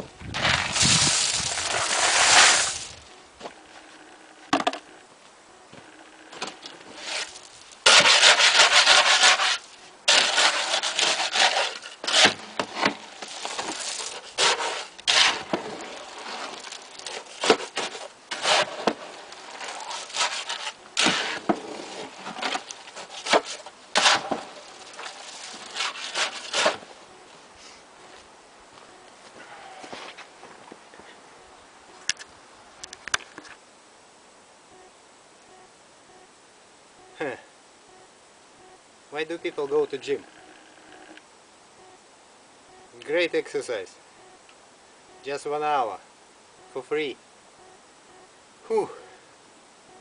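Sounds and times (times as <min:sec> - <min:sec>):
gravel tipped into mix: 0:00.2 - 0:03.1, 0:06.8 - 0:26.8
shovel scraping concrete mix: 0:00.3 - 0:03.0, 0:06.8 - 0:26.9.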